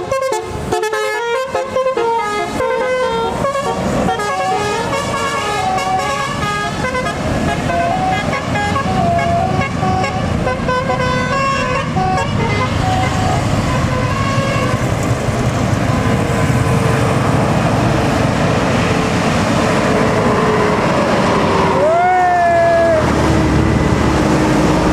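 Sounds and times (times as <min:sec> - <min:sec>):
musical bus horn melody: 0:00.0 - 0:14.9
bus engine and road noise: 0:00.0 - 0:24.9.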